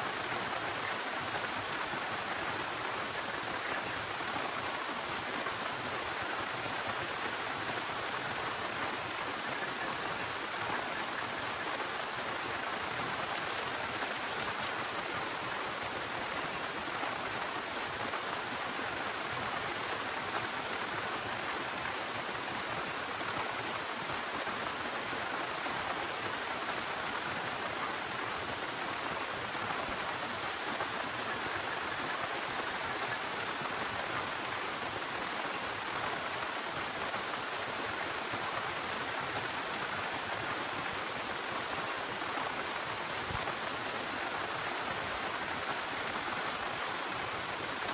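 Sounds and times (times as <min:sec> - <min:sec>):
heavy rain pouring: 0:36.6 - 0:47.9.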